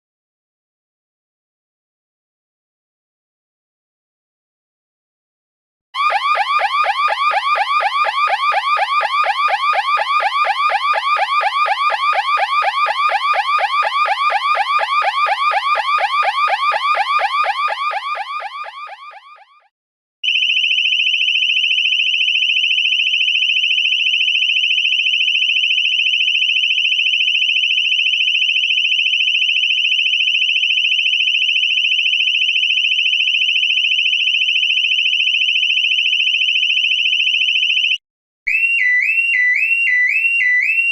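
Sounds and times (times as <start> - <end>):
electronic siren yelping: 6.0 - 19.7, 38.5 - 40.9
high-pitched electronic alarm tone: 6.0 - 19.7, 38.5 - 40.9.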